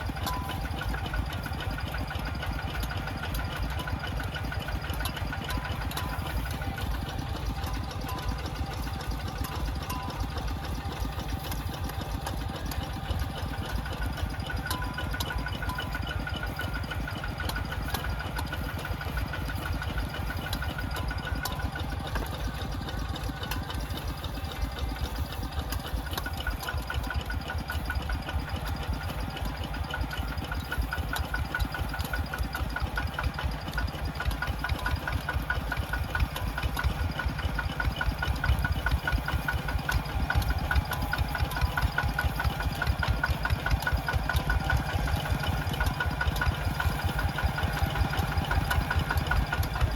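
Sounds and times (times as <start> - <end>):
tractor engine running: 0.0 - 49.9.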